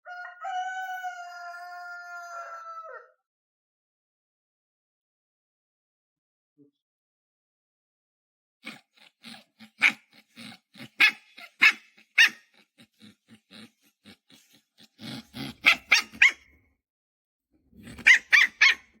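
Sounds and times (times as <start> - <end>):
puppy growling: 8.6 - 16.6, 17.7 - 19.0
puppy yapping: 8.7 - 12.6, 15.0 - 16.5, 17.8 - 19.0.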